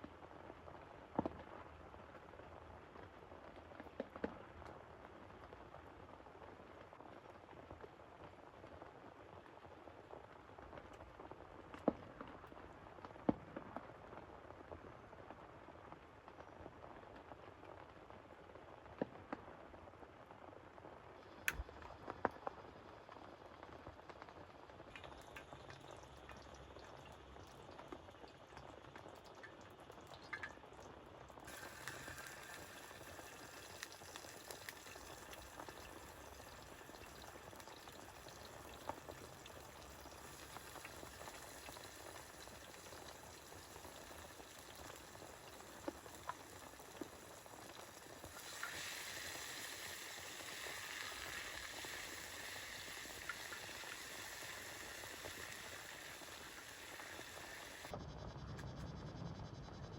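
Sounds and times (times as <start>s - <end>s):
liquid boiling in a pot: 0.0s - 58.3s
small pops: 21.3s - 23.2s, 31.4s - 58.0s.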